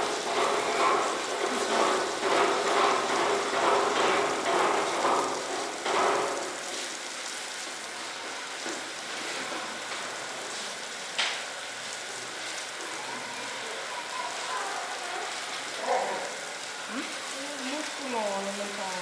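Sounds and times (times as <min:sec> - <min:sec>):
outdoor background hiss: 0:02.8 - 0:19.0
faint distant voices: 0:12.0 - 0:18.2.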